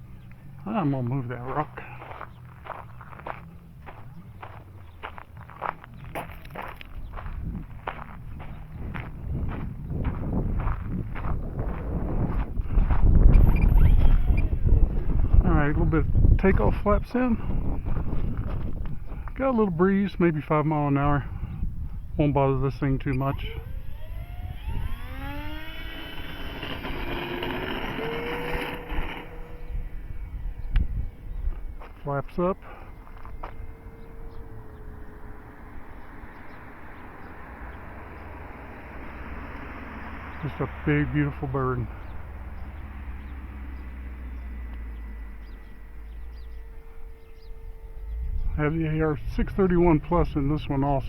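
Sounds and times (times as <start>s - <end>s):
electric motor and propeller whine: 0.0s - 51.0s
wind on microphone: 2.1s - 20.2s, 20.9s - 51.0s
faint bird chirps: 12.8s - 16.3s, 41.8s - 48.6s.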